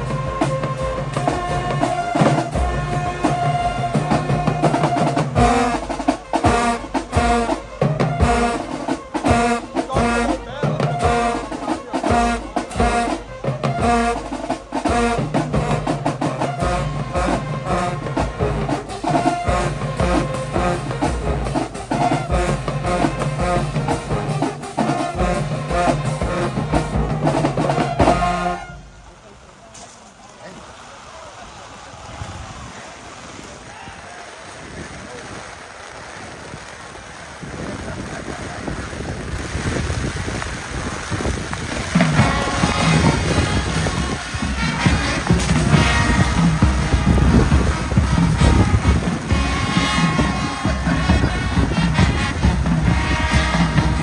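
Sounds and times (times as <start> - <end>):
drumline beat: 0.0 - 28.9, 41.4 - 54.0
marching band horns: 0.0 - 30.1, 40.5 - 54.0.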